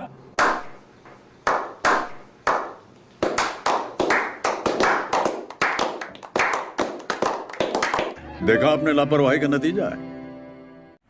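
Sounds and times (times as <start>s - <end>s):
hand claps: 0.4s - 8.2s.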